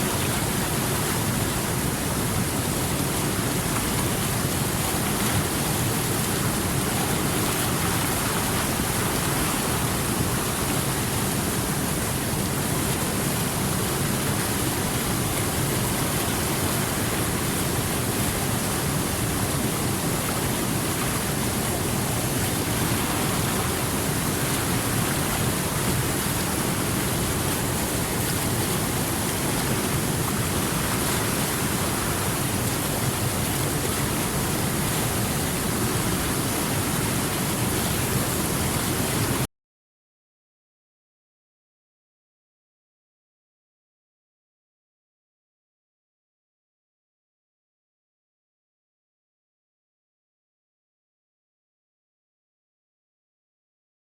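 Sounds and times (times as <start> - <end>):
stream babbling: 0.0 - 39.4.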